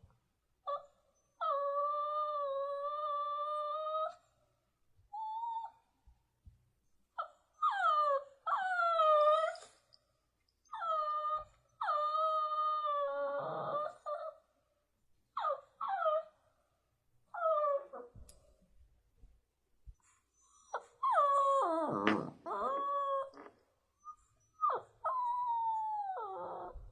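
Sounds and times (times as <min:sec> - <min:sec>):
dog whining and howling: 0:00.6 - 0:04.4, 0:05.1 - 0:06.0, 0:07.1 - 0:09.9, 0:10.6 - 0:14.6, 0:15.3 - 0:16.6, 0:17.3 - 0:18.4, 0:20.3 - 0:26.9.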